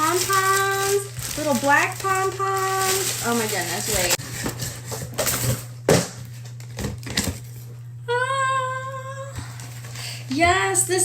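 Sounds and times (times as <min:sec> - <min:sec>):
steady low hum: 0:00.0 - 0:11.0
woman saying ooh: 0:08.1 - 0:09.4.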